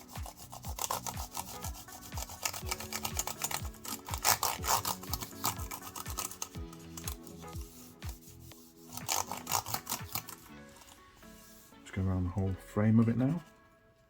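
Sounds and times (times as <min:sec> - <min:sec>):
cloth scrubbing plastic keyboard keys: 0:00.0 - 0:11.1
background music with steady beat: 0:00.0 - 0:14.0.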